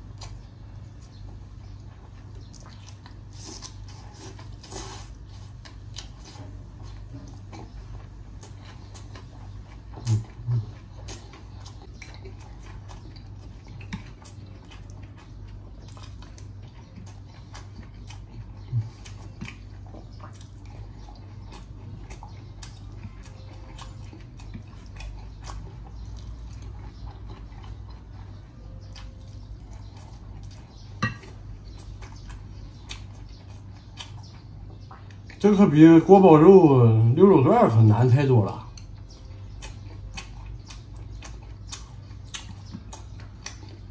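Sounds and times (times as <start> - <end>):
person chewing: 0.0 - 35.4, 37.5 - 43.9.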